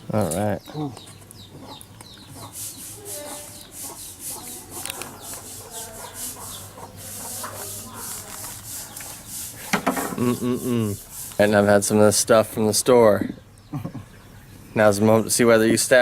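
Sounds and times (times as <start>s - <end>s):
blade scraping coconut husk: 2.5s - 11.8s.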